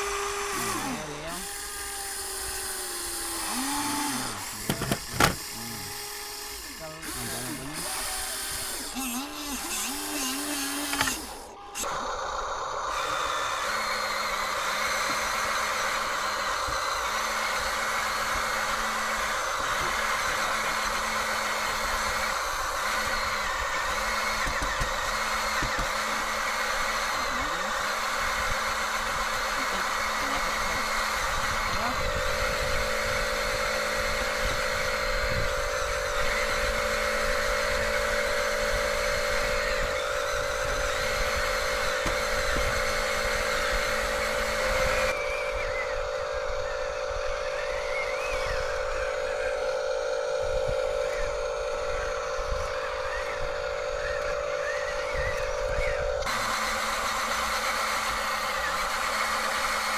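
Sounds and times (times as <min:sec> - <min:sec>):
high steady whine: 0:00.0 - 0:59.9
toy motors and gearboxes whirring: 0:00.0 - 0:59.9
low motor note: 0:29.4 - 0:58.8.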